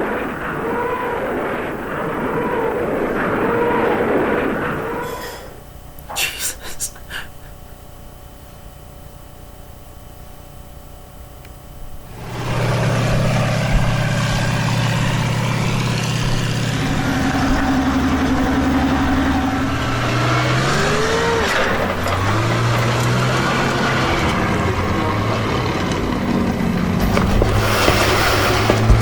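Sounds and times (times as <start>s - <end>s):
large engine starting and revving: 12.1s - 29.0s.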